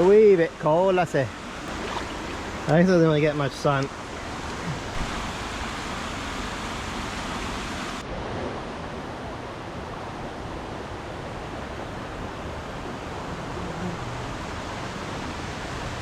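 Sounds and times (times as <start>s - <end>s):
river water rushing: 1.6s - 8.0s.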